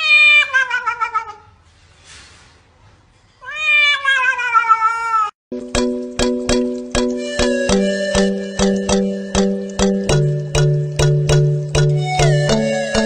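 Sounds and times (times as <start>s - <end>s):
cat meowing: 0.0s - 1.6s, 3.4s - 5.4s
music with plucked notes: 5.5s - 13.0s.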